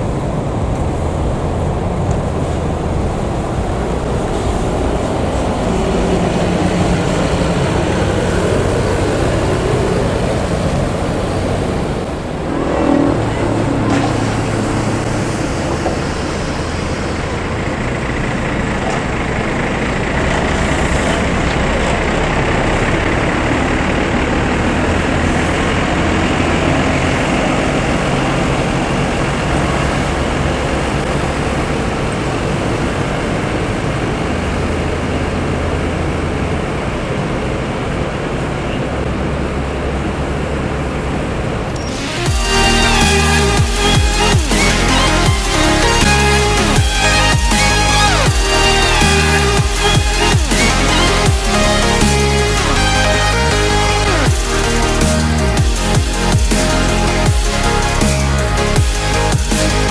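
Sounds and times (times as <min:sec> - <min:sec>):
low engine drone: 0:00.0 - 0:59.9
road and tyre noise: 0:00.0 - 0:59.9.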